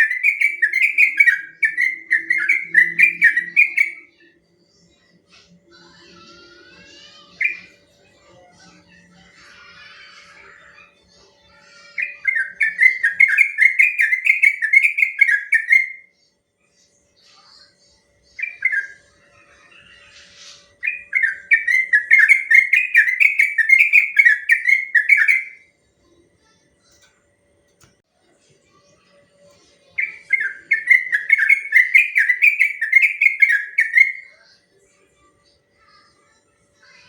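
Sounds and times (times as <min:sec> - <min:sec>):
bulbul singing: 0:00.0 - 0:04.8, 0:11.6 - 0:16.1, 0:20.8 - 0:25.6, 0:29.0 - 0:34.6.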